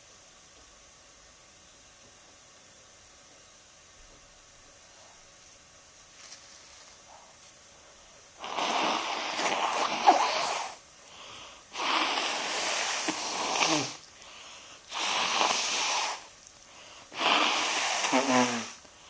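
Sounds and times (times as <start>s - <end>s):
person blowing nose: 8.4s - 10.8s, 11.7s - 14.1s, 14.9s - 16.4s, 17.1s - 18.9s.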